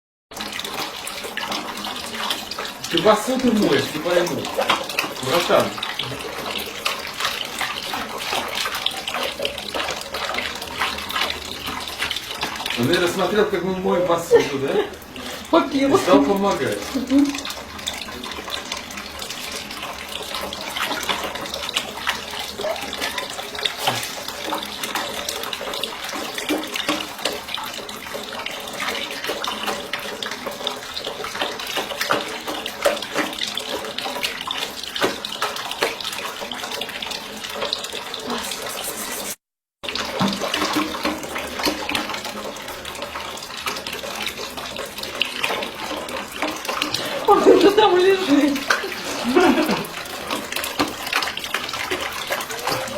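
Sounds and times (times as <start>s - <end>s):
tap water running into sink: 0.3s - 52.9s.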